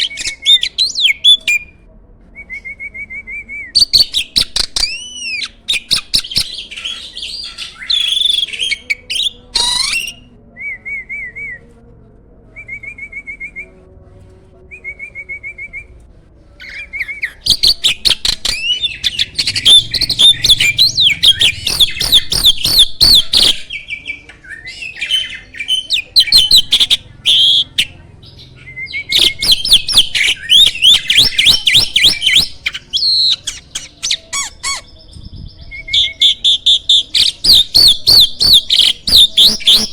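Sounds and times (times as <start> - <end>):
starling singing: 0.0 - 1.7, 3.8 - 10.3, 16.6 - 39.9
bird chattering: 17.2 - 23.7, 29.1 - 35.0, 36.3 - 39.9.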